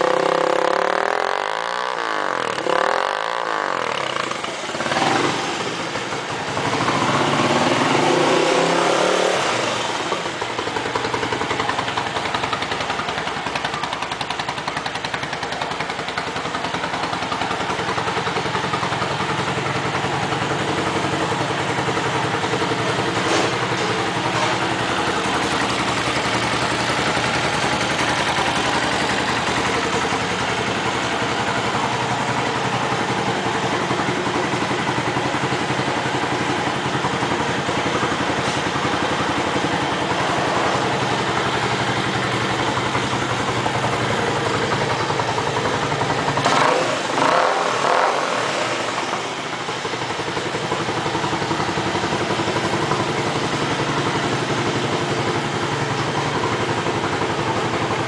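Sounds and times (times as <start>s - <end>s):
motorcycle engine idling: 0.0s - 58.0s.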